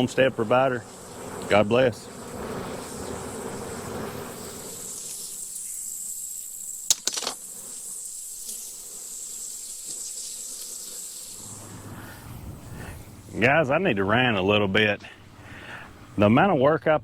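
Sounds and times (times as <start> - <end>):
honeybees buzzing: 0.0 - 16.8
high-pitched insect trill: 2.6 - 12.3.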